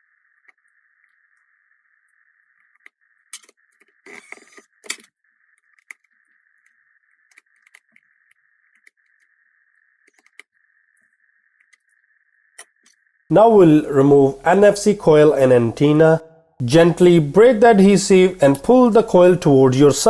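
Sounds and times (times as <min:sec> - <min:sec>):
faint steady hiss: 0:13.3 - 0:20.0.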